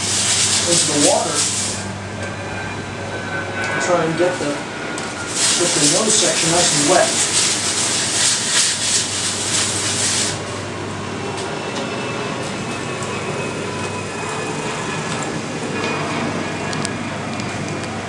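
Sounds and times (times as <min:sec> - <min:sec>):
low background hum: 0:00.0 - 0:18.0
sandpaper rubbing on foam: 0:05.2 - 0:10.4.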